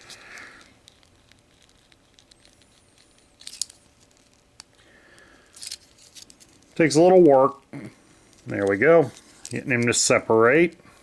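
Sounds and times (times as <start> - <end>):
plastic toy parts clicking: 3.4 - 4.7.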